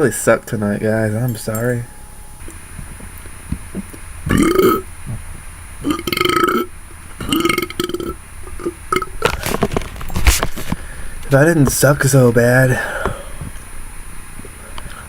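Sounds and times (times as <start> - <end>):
man burping: 3.7 - 9.3.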